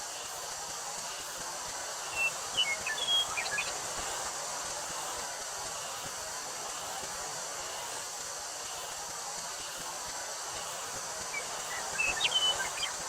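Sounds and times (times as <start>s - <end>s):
cicadas droning: 0.0s - 13.0s
wind through wheat field: 0.0s - 13.0s
bird chirping: 2.2s - 3.7s, 11.4s - 13.0s.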